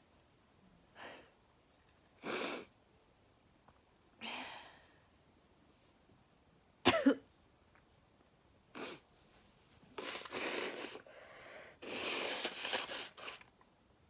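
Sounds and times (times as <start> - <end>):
nasal breaths before a sneeze: 2.2 - 2.7, 9.9 - 13.5.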